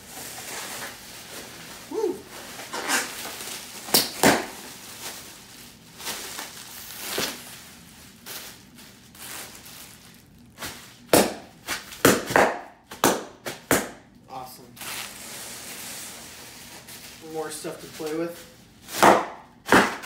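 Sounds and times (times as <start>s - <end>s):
packing material crackling: 0.0s - 12.0s.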